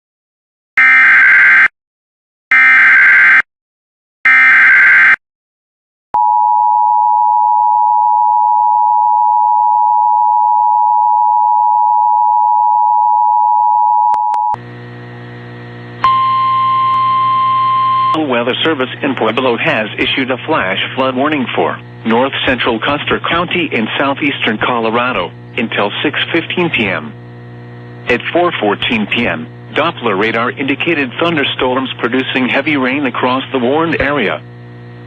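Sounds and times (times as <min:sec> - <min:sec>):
two-tone attention signal: 0:16.0 - 0:18.2.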